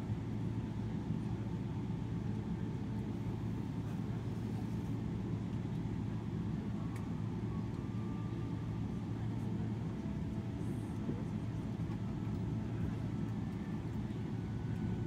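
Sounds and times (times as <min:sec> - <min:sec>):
aircraft cabin low rumble: 0:00.0 - 0:15.0.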